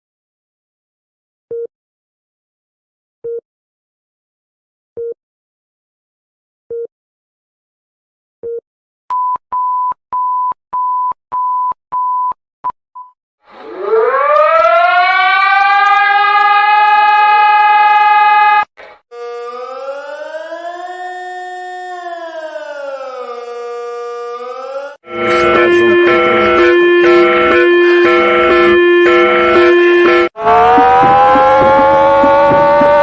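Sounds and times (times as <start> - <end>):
loud siren winding up: 13.5 - 33.0
quieter siren rising and falling: 13.5 - 33.0
low electronic beep: 25.1 - 33.0.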